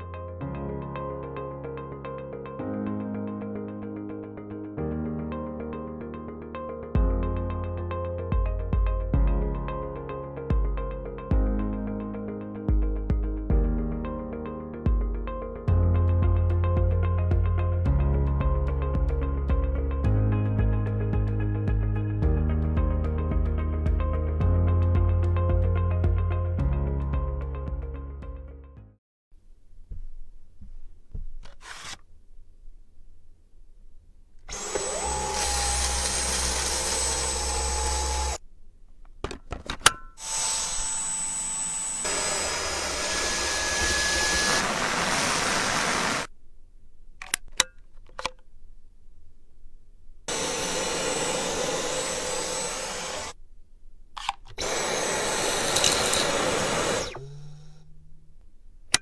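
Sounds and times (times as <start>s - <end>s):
vacuum cleaner motor whining: 34.5s - 38.4s, 40.2s - 46.3s, 50.3s - 53.4s, 54.6s - 57.8s.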